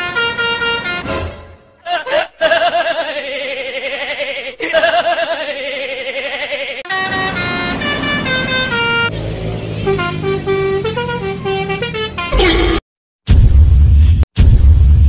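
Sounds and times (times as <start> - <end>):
musical bus horn tune: 0.0 - 1.8, 6.9 - 12.8.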